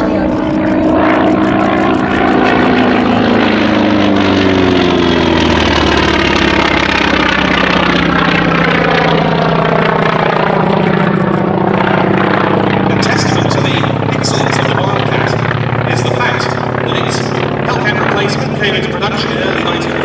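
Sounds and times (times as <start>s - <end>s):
airplane piston engine passing: 0.0s - 20.0s.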